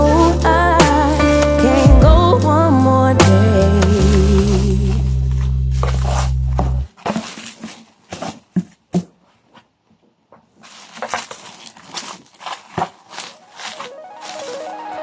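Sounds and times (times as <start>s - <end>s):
rustling handling noise: 5.3s - 15.0s.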